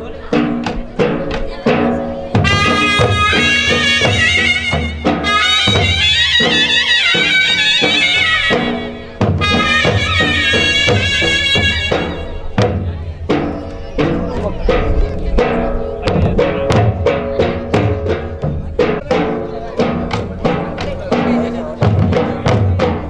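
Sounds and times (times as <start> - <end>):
steady drum beat: 0.0 - 23.0
reed-wind melody: 2.4 - 14.4.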